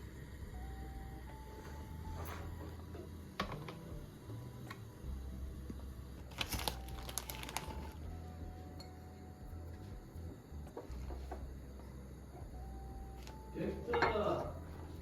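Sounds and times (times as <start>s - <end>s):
steady low hum: 0.0s - 15.0s
light clicks and crinkles: 6.3s - 8.0s.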